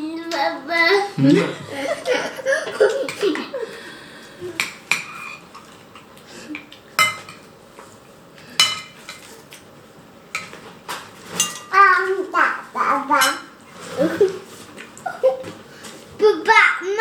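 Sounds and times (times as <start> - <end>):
child's voice: 0.0 - 2.0, 11.7 - 13.5, 16.2 - 17.0
crockery clinking together: 8.6 - 9.2, 11.3 - 11.8.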